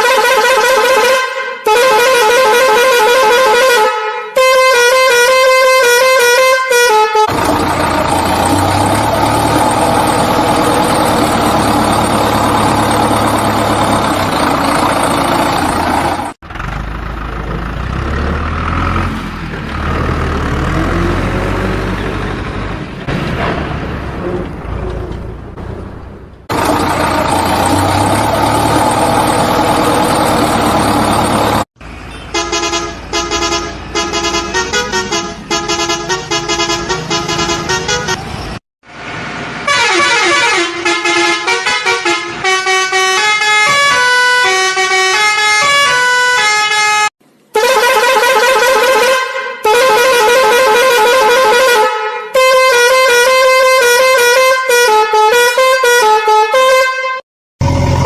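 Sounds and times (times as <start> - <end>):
vehicle noise with horn tones: 0.0 - 17.0, 24.2 - 38.6, 39.6 - 57.2.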